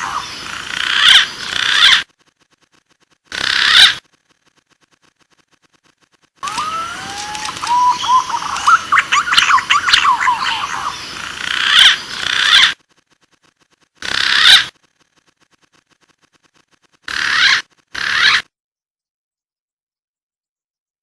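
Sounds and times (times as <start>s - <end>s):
pigeon whistled calls and chirping: 6.4s - 10.4s
harsh rasping bird call: 17.1s - 18.5s.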